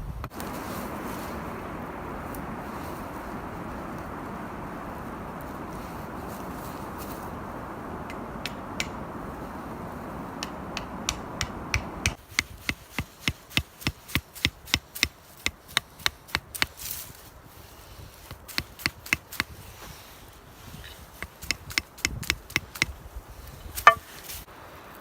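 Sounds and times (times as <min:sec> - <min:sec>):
wind rushing: 0:00.0 - 0:12.2
wood chopping strokes: 0:08.0 - 0:09.4, 0:10.2 - 0:17.2, 0:18.2 - 0:20.0, 0:21.0 - 0:23.0, 0:23.8 - 0:24.5.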